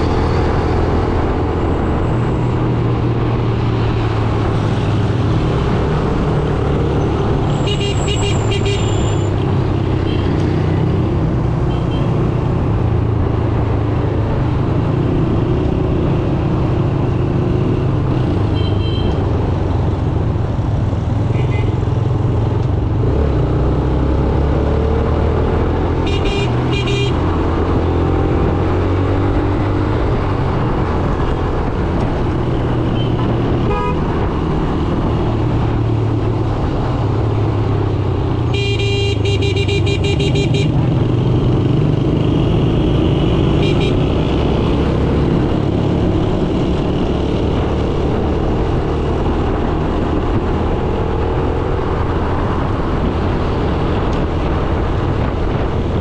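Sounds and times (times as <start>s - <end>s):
road and traffic noise: 0.0s - 56.0s
vehicle horns honking: 7.5s - 9.3s, 18.5s - 19.2s, 21.3s - 21.8s, 26.0s - 27.3s, 33.0s - 34.3s, 38.5s - 40.9s, 43.5s - 44.1s.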